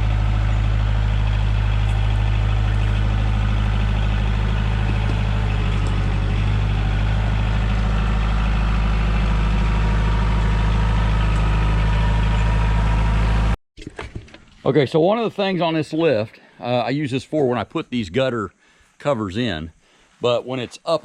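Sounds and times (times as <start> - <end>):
engine idling: 0.0 - 13.6.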